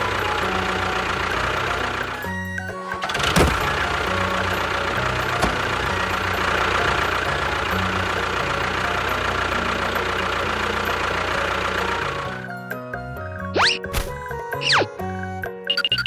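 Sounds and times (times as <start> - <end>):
toy tractor motor running: 0.0 - 12.6
low background music: 0.0 - 16.0.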